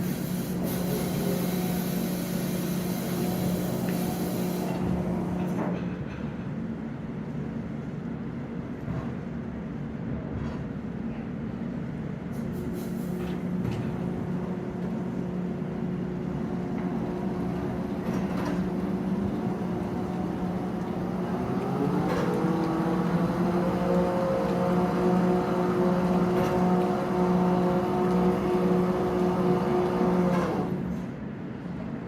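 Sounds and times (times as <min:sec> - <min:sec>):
low machinery drone: 0:13.2 - 0:32.0.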